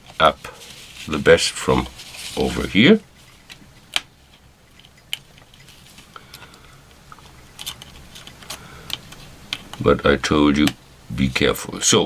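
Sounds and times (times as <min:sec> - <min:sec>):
smartphone parts clicking: 0:06.3 - 0:09.8.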